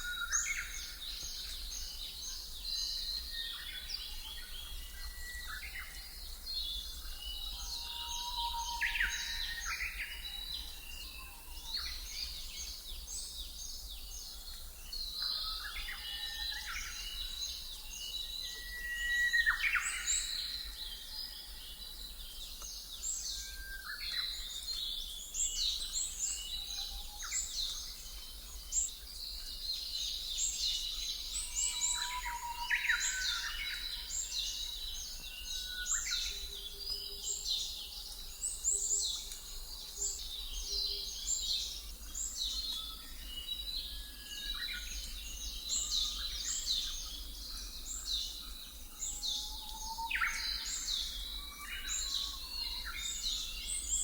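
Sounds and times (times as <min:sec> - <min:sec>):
small birds chirping and trilling: 0:00.0 - 0:54.0.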